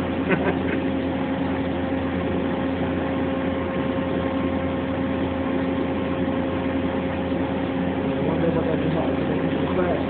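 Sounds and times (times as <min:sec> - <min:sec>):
machinery hum: 0:00.0 - 0:10.0.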